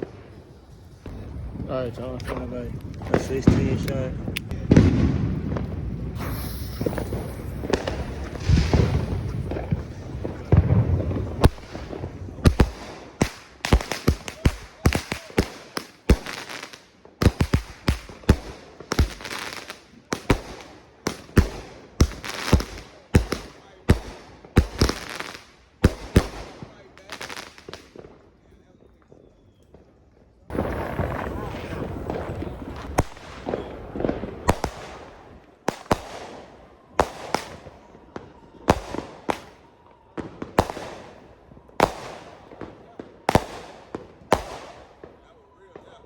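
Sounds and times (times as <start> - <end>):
firework bangs: 0.0 - 28.3, 29.1 - 46.0
hissing crackle: 5.6 - 14.4, 30.5 - 36.1.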